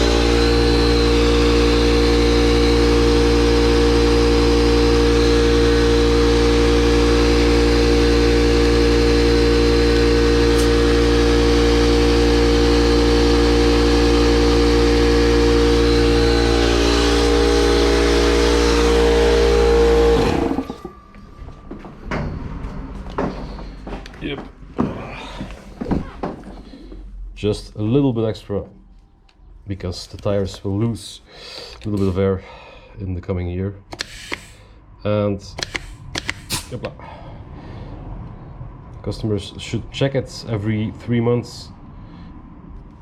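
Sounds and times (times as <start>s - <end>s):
air compressor motor running: 0.0s - 21.0s, 33.9s - 34.8s, 35.6s - 36.8s
short clicks: 33.9s - 34.6s, 35.5s - 36.8s.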